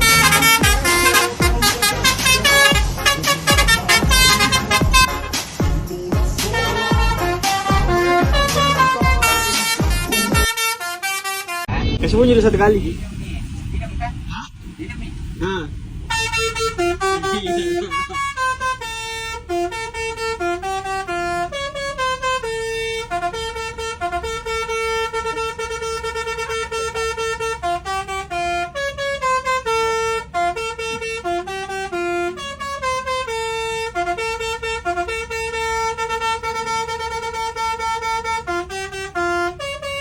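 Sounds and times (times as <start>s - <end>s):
bus musical horn melody: 0.0s - 12.6s, 15.4s - 40.0s.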